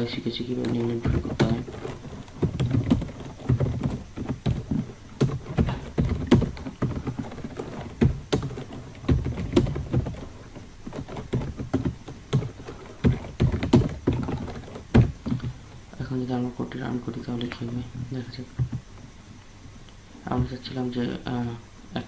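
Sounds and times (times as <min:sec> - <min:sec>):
typing on computer keyboard: 0:00.0 - 0:15.8.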